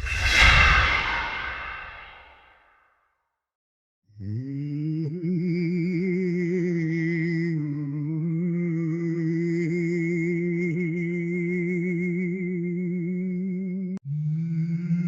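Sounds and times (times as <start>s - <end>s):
eerie wordless humming voice: 4.2s - 15.0s.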